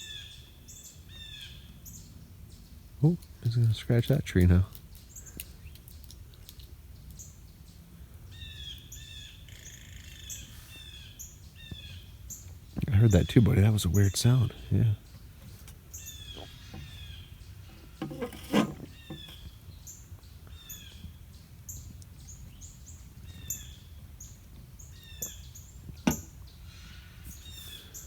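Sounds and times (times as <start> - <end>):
birds chirping: 0.0 - 28.0.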